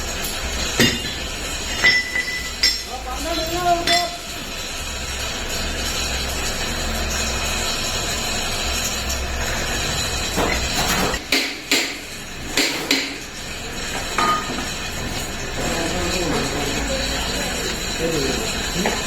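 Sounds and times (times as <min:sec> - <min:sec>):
metal knocks and clinks: 0:00.1 - 0:04.6, 0:12.5 - 0:19.0.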